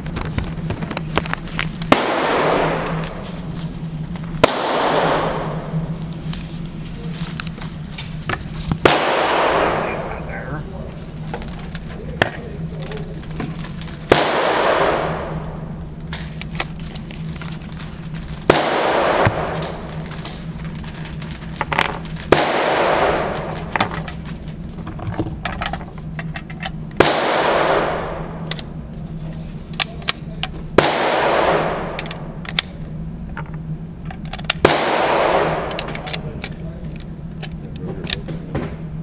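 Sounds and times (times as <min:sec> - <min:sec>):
handgun shots with echo: 0:01.9 - 0:03.3, 0:04.4 - 0:05.9, 0:08.8 - 0:10.4, 0:14.1 - 0:16.5, 0:18.5 - 0:20.5, 0:22.3 - 0:24.1, 0:27.0 - 0:28.6, 0:30.8 - 0:32.5, 0:34.6 - 0:36.5.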